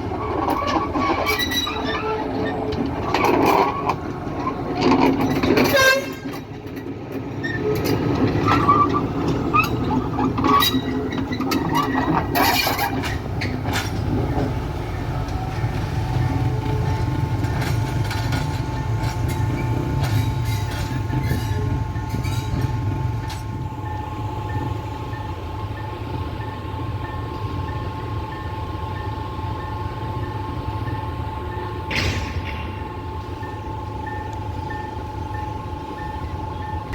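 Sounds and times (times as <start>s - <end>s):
diesel train drone: 0.0s - 36.9s
short squeals: 0.2s - 4.0s.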